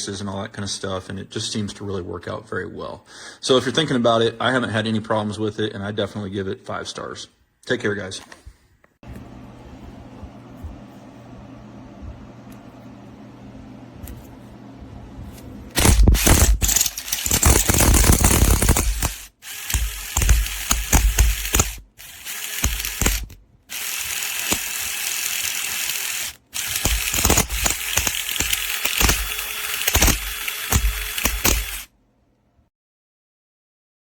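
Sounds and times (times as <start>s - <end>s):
impact wrench rattling: 15.8s - 31.9s.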